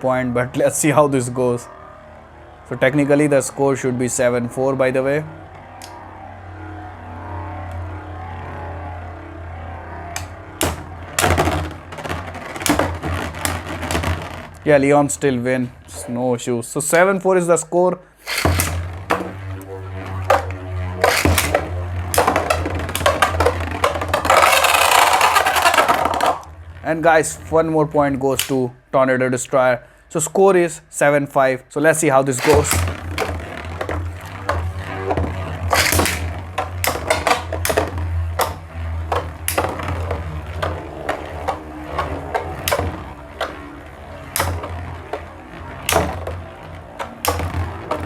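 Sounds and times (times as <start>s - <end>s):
steady low hum: 0.0s - 17.1s, 18.0s - 30.1s, 32.0s - 48.0s
spinning tops clashing and grinding: 10.0s - 14.6s, 18.2s - 26.5s, 32.4s - 48.0s.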